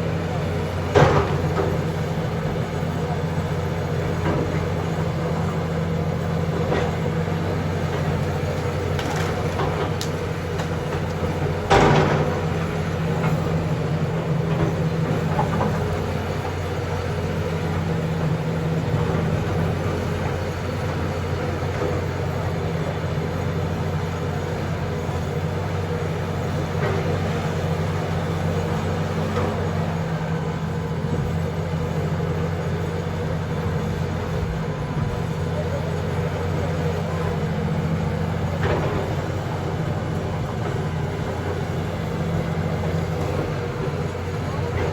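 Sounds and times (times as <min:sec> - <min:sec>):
diesel engine running: 0:00.0 - 0:44.9.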